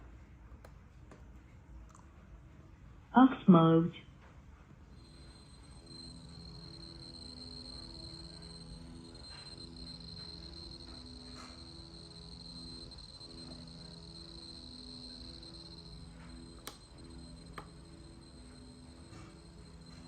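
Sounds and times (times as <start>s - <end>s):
sharp clicks: 5.0s - 20.0s
speaker high-pitched buzz: 5.0s - 20.0s.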